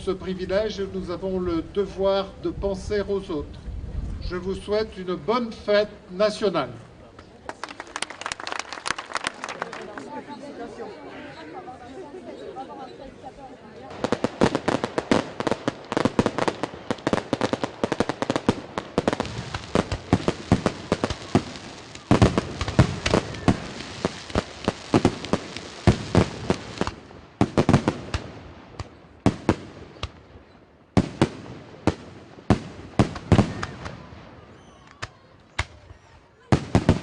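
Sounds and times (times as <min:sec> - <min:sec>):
fireworks bangs with crackling: 0:13.9 - 0:37.0.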